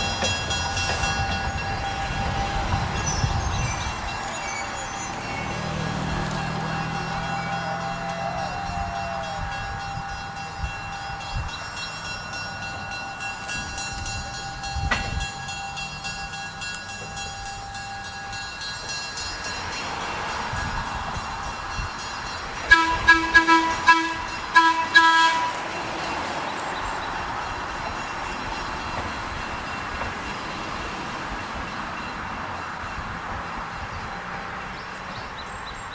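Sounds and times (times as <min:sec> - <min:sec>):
locomotive horn blasts: 0:00.0 - 0:17.0, 0:22.6 - 0:26.4
diesel locomotive engine hum: 0:00.0 - 0:35.9.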